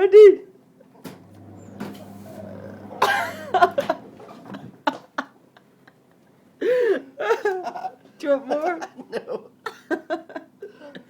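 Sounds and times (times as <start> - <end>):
low steady hum: 1.1 - 4.9
throaty vocal noises: 1.2 - 4.8
person coughing: 2.8 - 4.0.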